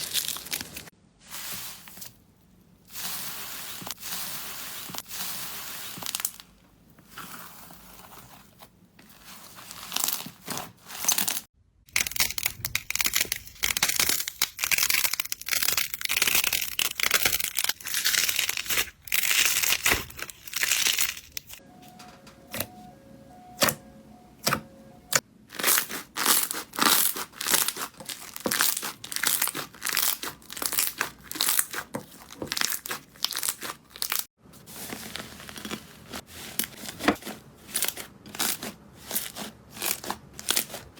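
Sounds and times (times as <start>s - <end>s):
slime crackling and popping: 9.7s - 21.4s, 25.6s - 34.2s.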